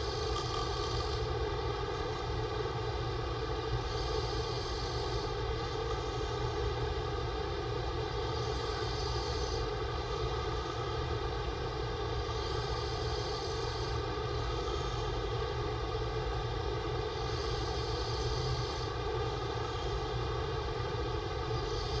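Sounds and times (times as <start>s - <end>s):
man snoring: 0.0s - 1.3s
steady droning hum: 0.0s - 22.0s.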